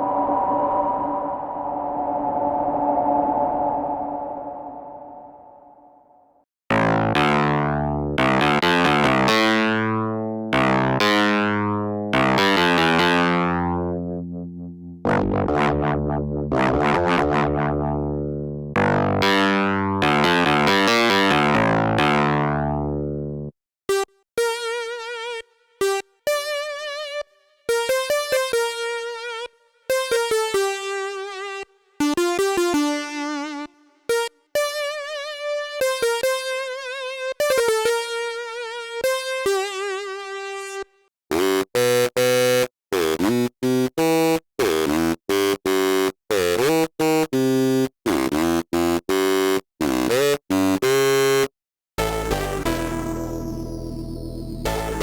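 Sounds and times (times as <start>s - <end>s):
synthesizer notes with vibrato: 0.0s - 6.1s, 52.0s - 55.0s
synthesizer chords: 52.0s - 55.0s.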